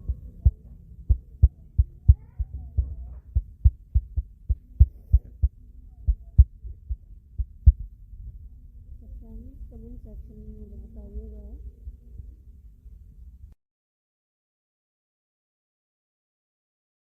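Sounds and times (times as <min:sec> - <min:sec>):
low dull thumps: 0:00.0 - 0:08.4
low hum: 0:00.0 - 0:13.6.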